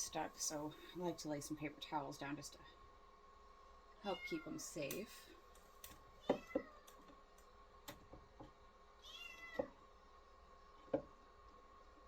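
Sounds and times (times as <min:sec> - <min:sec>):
faint steady hum: 0:00.0 - 0:12.0
cat meowing: 0:06.2 - 0:06.9, 0:09.0 - 0:09.7.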